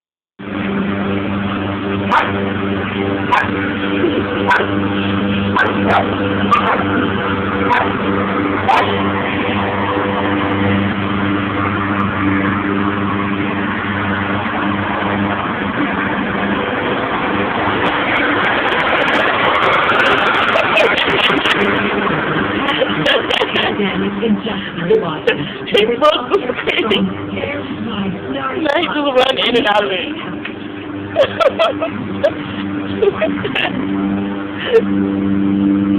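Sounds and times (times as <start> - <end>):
lawn mower engine running: 0.4 - 35.9
dog barking: 2.1 - 2.4, 3.3 - 3.5, 4.4 - 4.7, 5.6 - 6.9, 7.7 - 7.9, 8.7 - 8.9.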